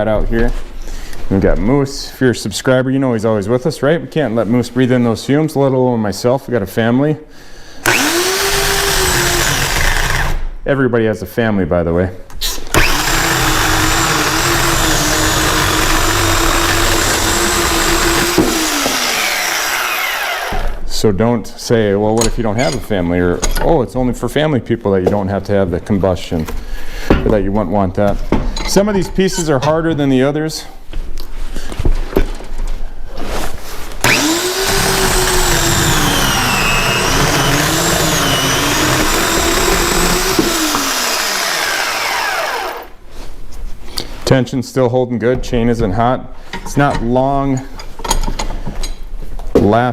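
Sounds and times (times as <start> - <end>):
electric chainsaw whining: 7.8 - 10.4, 12.7 - 20.8, 34.0 - 43.0.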